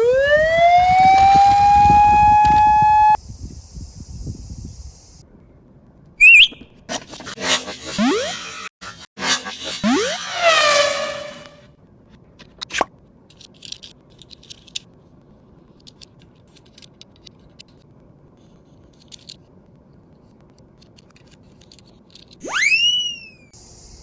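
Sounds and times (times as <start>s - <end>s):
short sharp sound: 9.7s - 11.6s.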